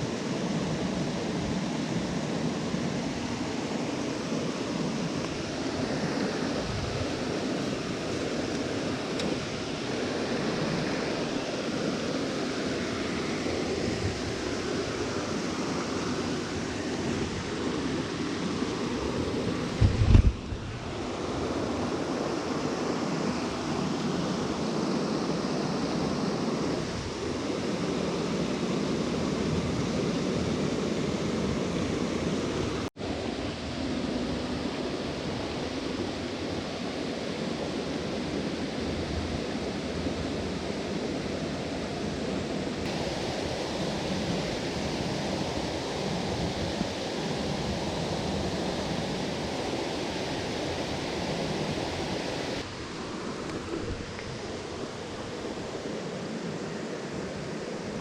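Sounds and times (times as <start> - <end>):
mountain stream flowing: 0.0 - 58.0.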